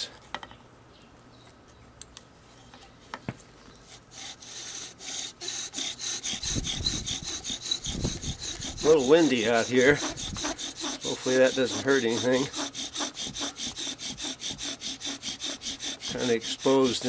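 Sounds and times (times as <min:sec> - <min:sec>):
bow drill rasping: 0:03.9 - 0:17.0.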